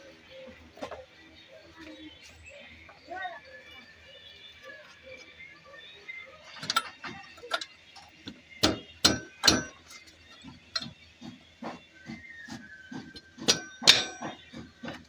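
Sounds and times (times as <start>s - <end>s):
metal tools clanking: 6.5s - 11.0s, 13.1s - 15.0s.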